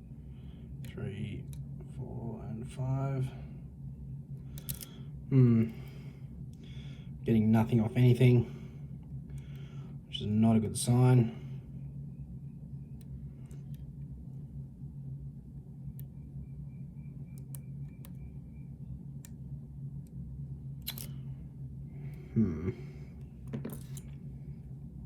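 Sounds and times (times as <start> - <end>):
steady low hum: 0.0 - 25.0
lock pick ticking and scraping: 4.6 - 5.0, 20.8 - 21.2
sharp lock click: 20.8 - 21.2.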